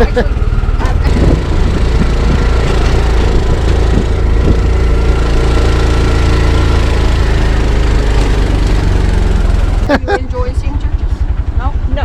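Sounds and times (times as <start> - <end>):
small engine running steadily: 0.0 - 12.0.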